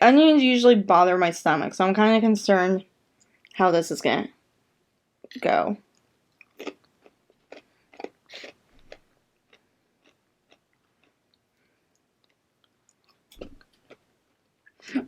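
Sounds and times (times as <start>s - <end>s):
person chewing food: 5.9s - 14.8s.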